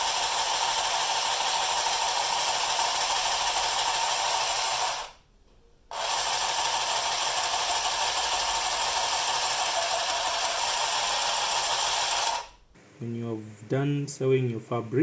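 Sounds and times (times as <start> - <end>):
sewing machine rattling: 0.0 - 5.2, 5.9 - 12.6.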